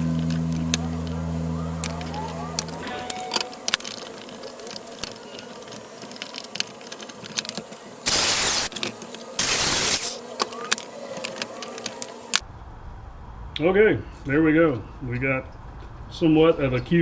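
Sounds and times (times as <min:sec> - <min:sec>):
reciprocating saw cutting wood: 0:08.0 - 0:12.2.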